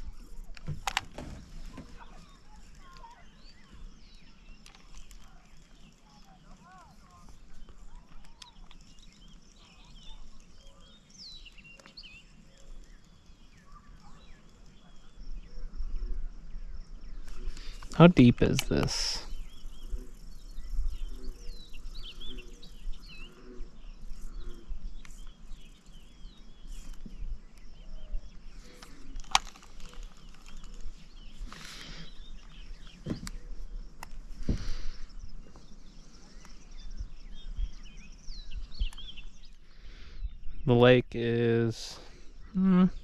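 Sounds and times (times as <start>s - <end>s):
birds chirping: 0.0s - 43.0s
sharp clicks: 17.6s - 19.1s, 28.7s - 33.4s.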